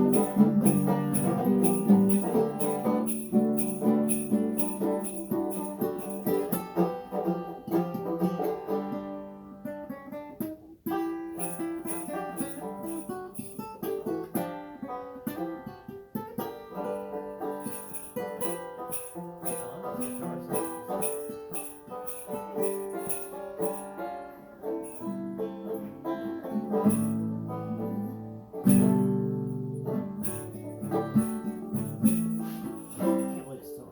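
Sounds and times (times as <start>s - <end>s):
sleigh bells shaken: 0.0s - 7.0s, 11.2s - 14.2s, 16.8s - 25.4s, 26.7s - 27.4s, 28.6s - 33.9s
acoustic guitar playing: 0.0s - 33.9s
banjo playing: 0.0s - 33.9s.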